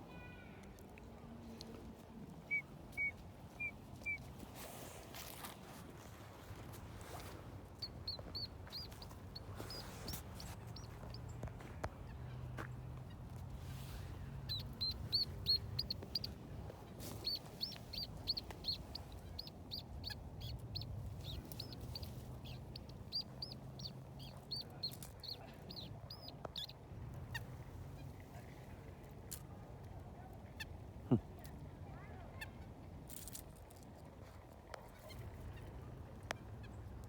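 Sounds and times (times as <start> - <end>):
faint low hum: 0.0 - 37.0
bird chirping: 2.4 - 4.3, 7.8 - 11.4, 14.0 - 26.7.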